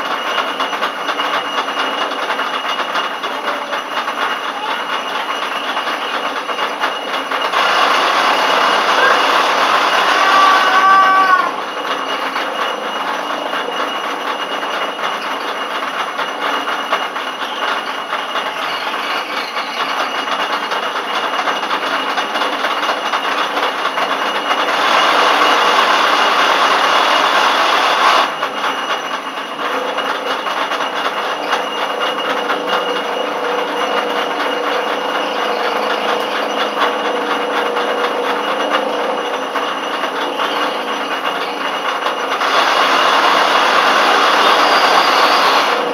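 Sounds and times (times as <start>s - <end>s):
lathe mechanical hiss: 24.5s - 28.4s, 40.2s - 45.9s.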